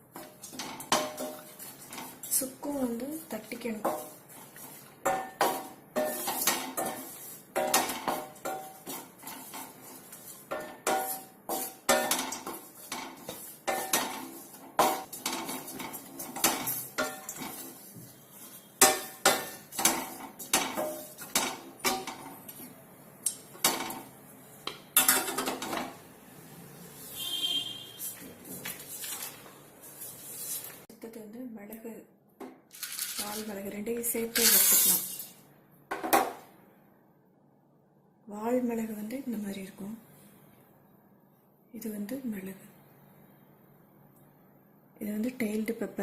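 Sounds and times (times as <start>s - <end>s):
metal spatula scraping a pan: 0.1s - 2.6s, 3.3s - 22.3s.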